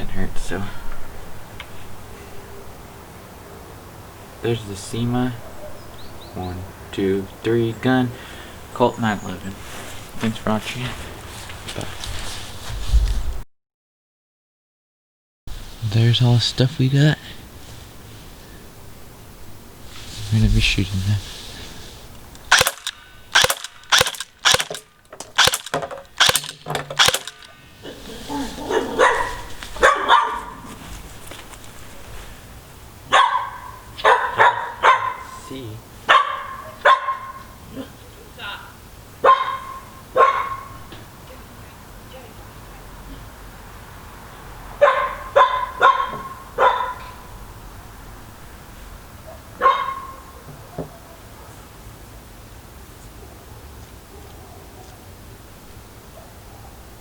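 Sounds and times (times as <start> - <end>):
airsoft pistol shots: 22.4 - 27.6
dog barking: 28.5 - 30.7, 33.1 - 35.4, 36.1 - 37.6, 39.2 - 40.9, 44.8 - 47.3, 49.2 - 51.6, 54.1 - 55.0, 56.1 - 56.9.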